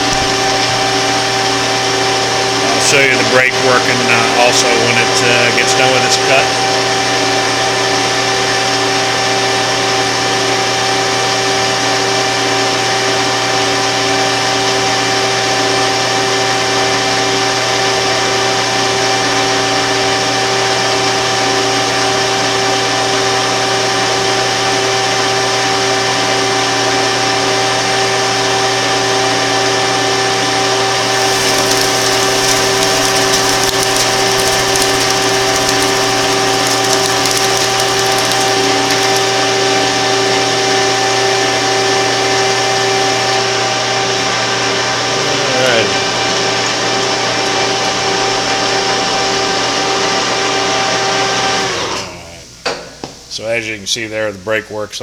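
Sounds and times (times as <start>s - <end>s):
lathe humming and whining: 0.0s - 53.1s
scratchy cutting hiss: 31.0s - 39.5s.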